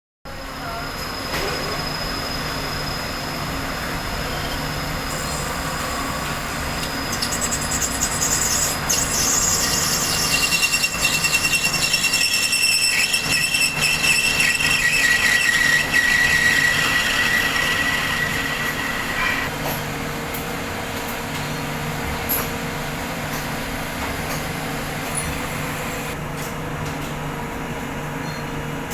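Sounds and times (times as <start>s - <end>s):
cutting tool squealing: 4.3s - 19.5s
lathe motor hum: 5.0s - 19.5s.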